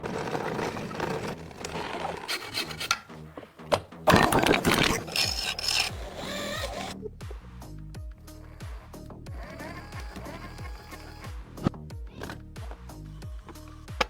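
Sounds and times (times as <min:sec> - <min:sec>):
bamboo being rasped: 0:00.0 - 0:03.2, 0:04.1 - 0:07.0, 0:08.3 - 0:11.3.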